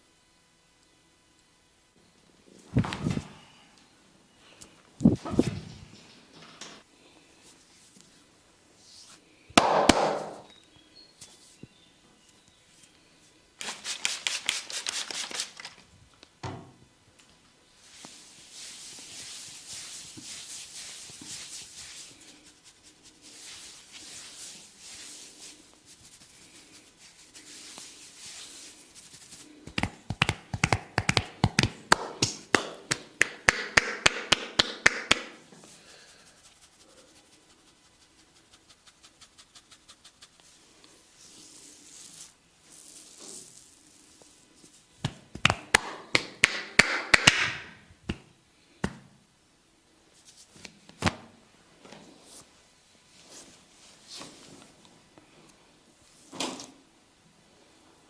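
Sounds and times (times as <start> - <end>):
rubbing of skin: 13.6 - 15.8, 17.8 - 31.8, 35.6 - 45.8
rapid percussive massage taps: 29.7 - 35.4, 45.0 - 47.5.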